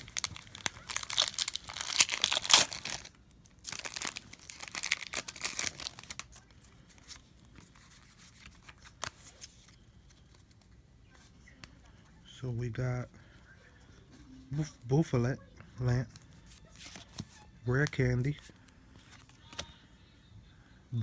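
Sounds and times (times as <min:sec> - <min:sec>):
foil wrapper tearing and crinkling: 0:00.0 - 0:09.7
cards clicking and rustling: 0:03.7 - 0:10.8, 0:16.0 - 0:19.8.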